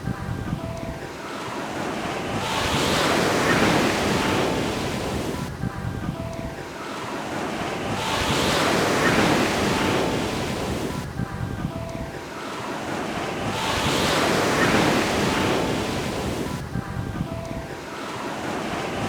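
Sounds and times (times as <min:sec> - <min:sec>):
ocean surf washing onto beach: 0:00.0 - 0:19.0.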